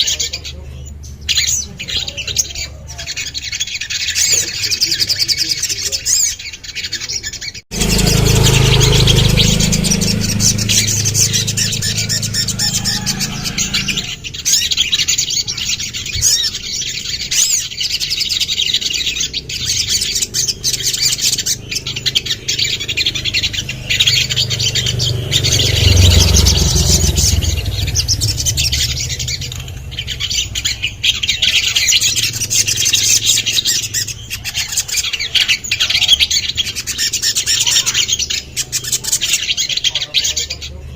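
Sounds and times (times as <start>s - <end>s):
bird chirping and trilling: 0.0s - 40.9s
low rumble: 7.7s - 14.4s, 19.6s - 32.9s.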